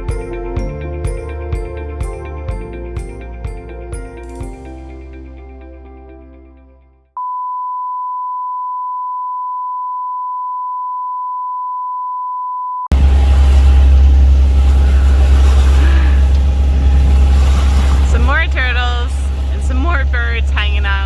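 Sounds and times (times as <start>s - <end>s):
background music: 0.0s - 7.0s
loud low rumbling: 12.9s - 21.0s.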